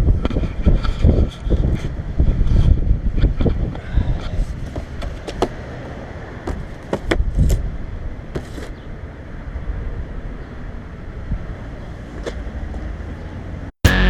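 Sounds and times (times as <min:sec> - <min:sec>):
wind on microphone: 0:00.0 - 0:05.3, 0:07.1 - 0:08.2.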